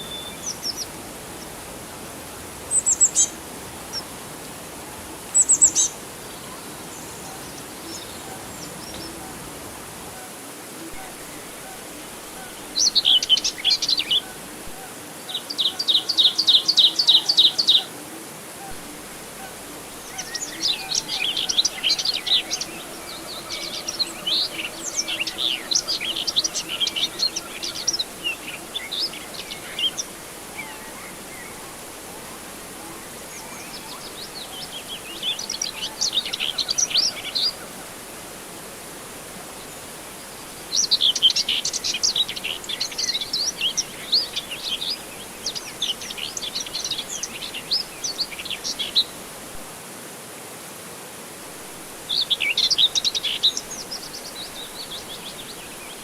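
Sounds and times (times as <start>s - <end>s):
birds chirping: 0.0s - 1.6s, 10.8s - 17.9s, 18.6s - 38.1s, 39.6s - 49.2s
faint steady hiss: 0.0s - 56.0s.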